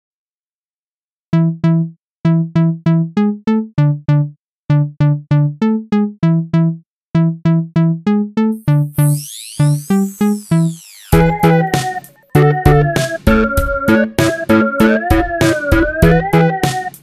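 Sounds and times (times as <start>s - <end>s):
simple electronic melody: 1.3s - 17.0s
high sweeping tones: 8.6s - 16.4s.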